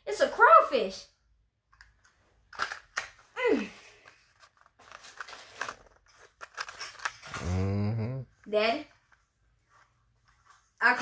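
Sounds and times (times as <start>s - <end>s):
plastic packaging crinkling: 4.1s - 7.3s
falling vocal sound: 7.4s - 8.2s
low hummed voice: 7.4s - 8.2s.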